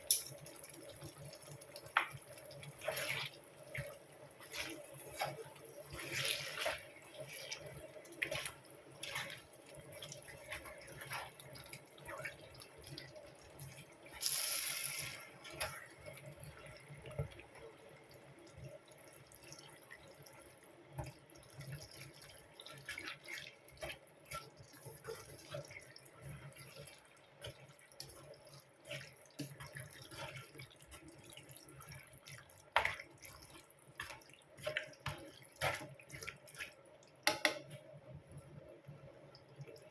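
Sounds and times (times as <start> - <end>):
water dripping: 0.0 - 39.9
tap water running: 14.2 - 16.0.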